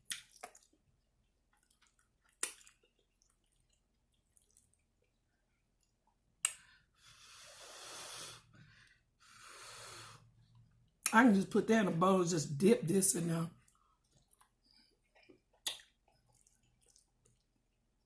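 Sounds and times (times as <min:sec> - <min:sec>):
mouth clicks and lip smacks chewing: 0:00.0 - 0:06.8, 0:13.6 - 0:18.0
breath through the nose: 0:06.6 - 0:10.4.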